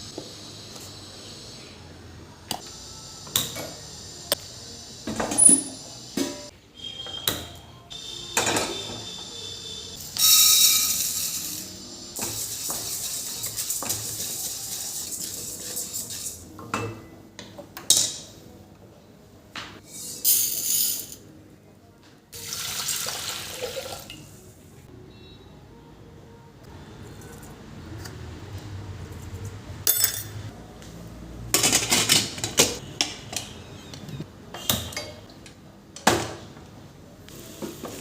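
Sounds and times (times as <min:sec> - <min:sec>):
dishes and utensils clinking: 0:08.4 - 0:09.1, 0:29.9 - 0:30.5, 0:31.5 - 0:34.0.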